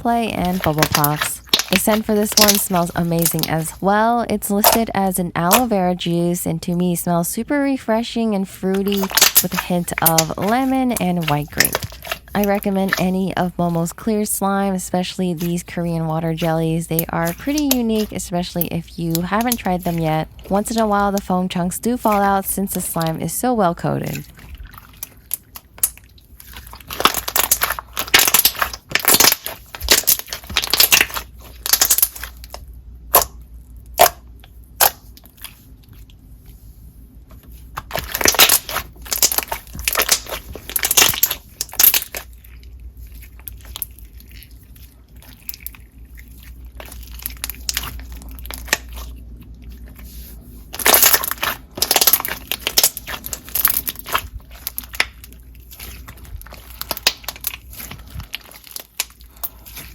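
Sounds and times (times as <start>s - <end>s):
hands squeezing crunchy slime: 0.1s - 3.9s, 8.6s - 21.3s, 21.9s - 23.3s, 24.0s - 36.2s, 37.6s - 59.9s
slime popping: 0.4s - 3.6s, 4.6s - 4.8s, 8.7s - 13.2s, 17.0s - 18.1s, 26.7s - 32.5s, 37.8s - 42.3s, 50.7s - 59.9s.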